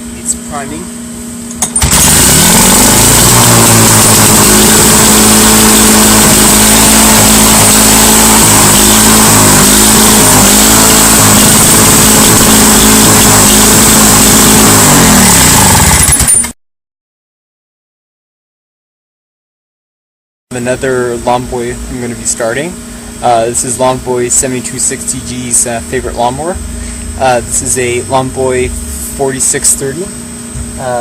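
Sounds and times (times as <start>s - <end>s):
lawn mower engine running: 1.5s - 16.5s.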